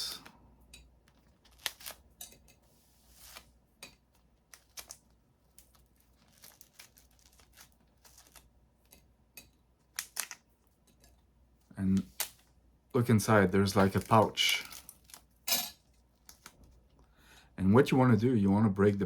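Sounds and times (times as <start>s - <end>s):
brittle shell crackling: 1.0s - 2.6s, 3.8s - 11.1s, 13.7s - 17.0s.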